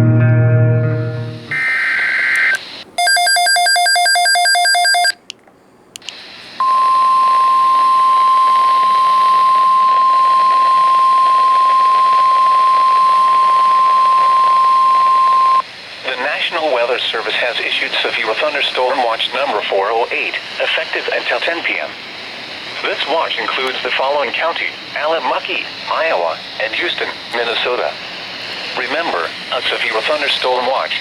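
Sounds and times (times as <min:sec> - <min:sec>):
music: 0:00.0 - 0:01.6
steady warning alarm tone: 0:01.1 - 0:05.2, 0:06.6 - 0:15.6
radio hiss: 0:01.2 - 0:03.0, 0:06.0 - 0:31.0
rapid beeps: 0:01.6 - 0:05.2.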